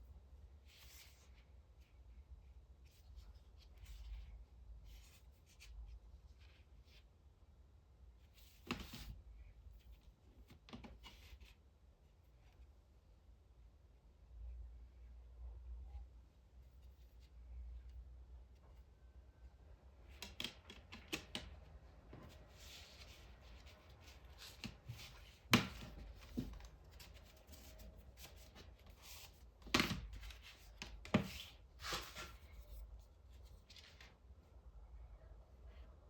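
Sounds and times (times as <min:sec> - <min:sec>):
cardboard rustling and rubbing: 0:22.1 - 0:34.2.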